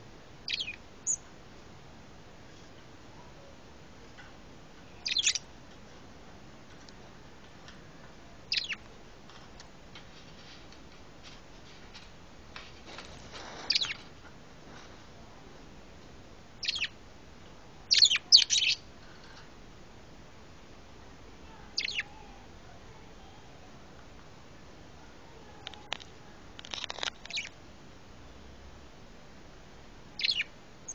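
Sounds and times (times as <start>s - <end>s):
bird giving shrill chirps: 5.0s - 5.4s, 16.6s - 16.9s, 30.2s - 30.9s.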